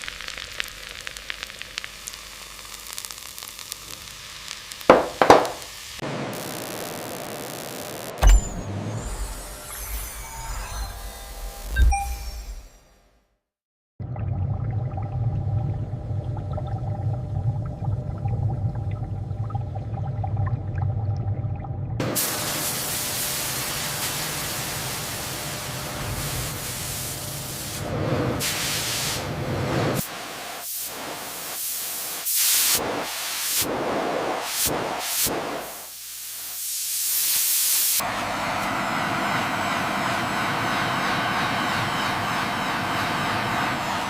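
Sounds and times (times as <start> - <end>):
low steady rumble: 14.0 - 22.0
loud hissing spray: 22.0 - 38.0.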